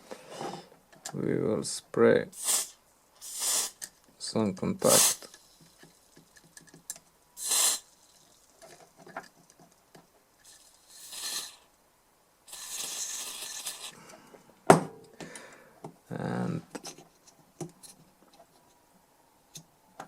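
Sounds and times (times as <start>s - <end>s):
aerosol spray hissing: 2.4s - 3.8s, 4.8s - 5.3s, 7.4s - 8.0s, 10.5s - 11.7s, 12.5s - 14.0s.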